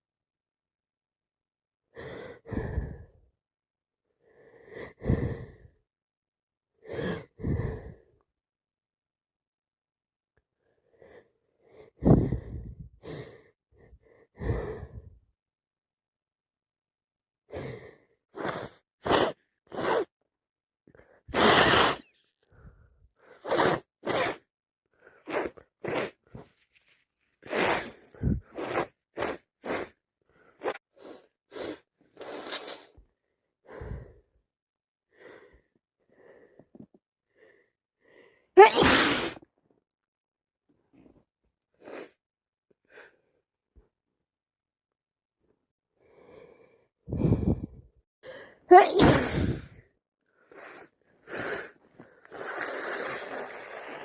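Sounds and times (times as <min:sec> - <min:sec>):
woman sniffing: 0:18.3 - 0:20.1, 0:21.3 - 0:22.2, 0:23.2 - 0:24.5, 0:25.1 - 0:26.6, 0:27.4 - 0:33.0, 0:38.6 - 0:39.4, 0:48.7 - 0:49.8, 0:50.5 - 0:54.0
wet sneezes: 0:21.3 - 0:22.1, 0:38.6 - 0:39.4, 0:48.7 - 0:49.7.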